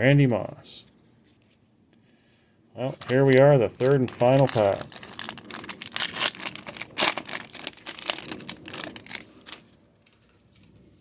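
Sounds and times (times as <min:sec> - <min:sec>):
card pack wrapper crinkling and tearing: 0:02.9 - 0:10.7.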